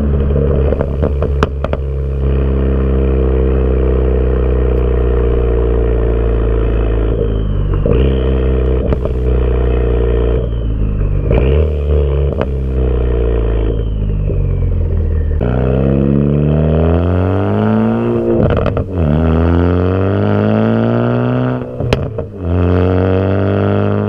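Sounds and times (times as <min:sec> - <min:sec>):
exhaust pops: 0:00.0 - 0:03.1, 0:06.6 - 0:16.7, 0:17.4 - 0:22.7
car exhaust running: 0:00.0 - 0:24.0.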